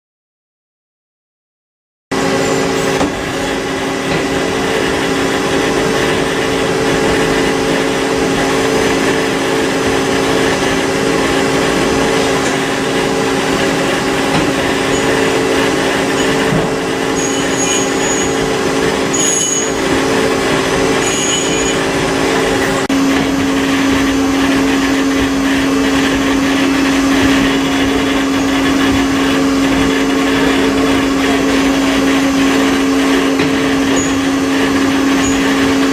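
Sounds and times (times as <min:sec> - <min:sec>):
lathe machine whining: 0:02.1 - 0:35.9.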